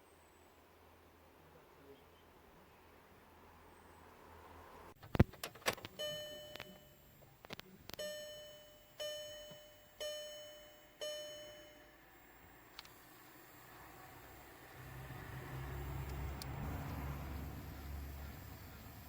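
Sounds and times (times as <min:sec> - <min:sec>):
dashboard warning gong chiming: 0:05.9 - 0:07.4, 0:08.0 - 0:12.7
sharp clicks: 0:16.0 - 0:17.0.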